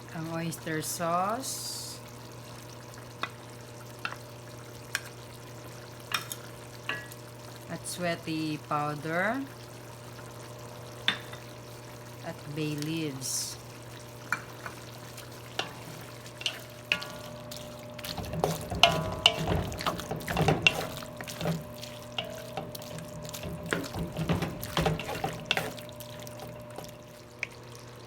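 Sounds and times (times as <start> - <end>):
sauce bubbling and sloshing: 2.0 - 7.6, 13.6 - 28.0
utensil clinking against pan: 15.6 - 17.4, 18.0 - 26.6.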